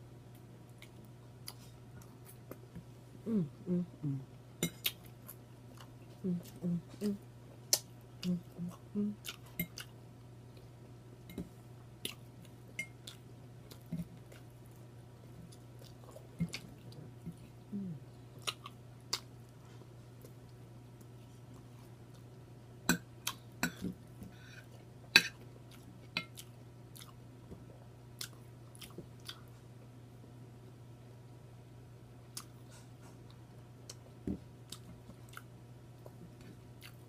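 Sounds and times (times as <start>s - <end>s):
chewing: 4.7s - 17.6s, 18.4s - 22.4s, 24.6s - 29.5s, 34.7s - 37.0s.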